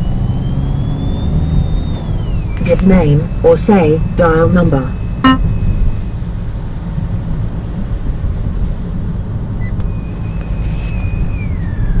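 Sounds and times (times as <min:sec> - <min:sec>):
thin high whine: 0:00.0 - 0:06.6, 0:09.6 - 0:12.0
car interior rumble: 0:00.0 - 0:12.0.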